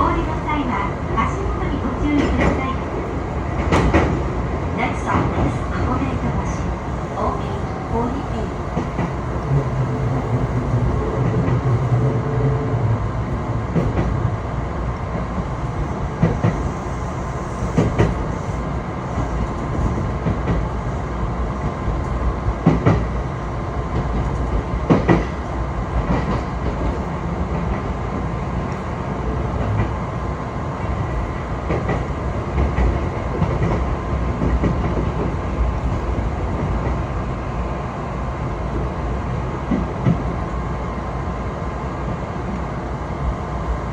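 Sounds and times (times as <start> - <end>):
train rumbling along track: 0.0 - 43.9
wheels clacking over rail joints: 1.9 - 6.4.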